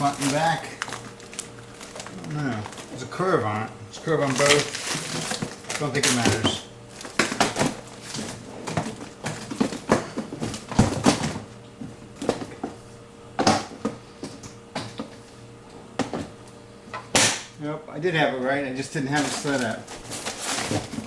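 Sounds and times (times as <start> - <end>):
plastic bins knocking and clicking: 4.3 - 11.4.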